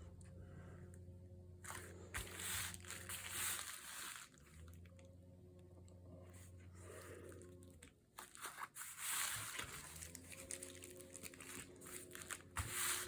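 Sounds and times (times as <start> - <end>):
paper and plastic crinkling: 1.6 - 4.8, 8.2 - 13.0.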